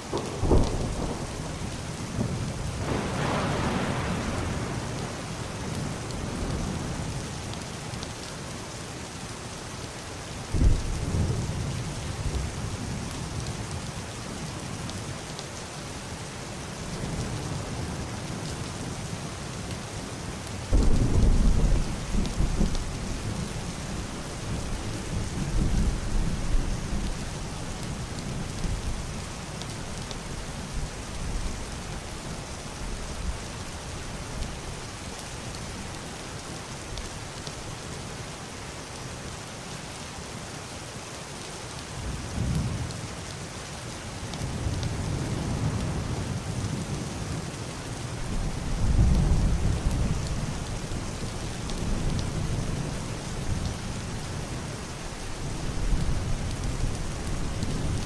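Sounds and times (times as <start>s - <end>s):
heavy rain on roof and window: 0.0s - 58.0s
distant thunder rumbling: 0.1s - 1.4s, 2.2s - 5.2s, 20.7s - 26.5s.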